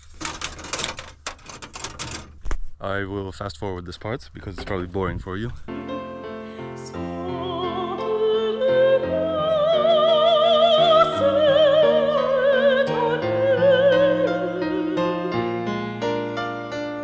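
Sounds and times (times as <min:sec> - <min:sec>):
operatic singer with vibrato: 0:05.7 - 0:15.9.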